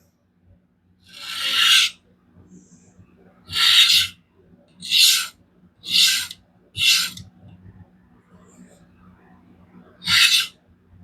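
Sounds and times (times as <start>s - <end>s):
gritty strokes of sharpening plate on knife: 1.1s - 1.9s, 3.5s - 4.1s, 5.9s - 7.2s, 10.0s - 10.5s.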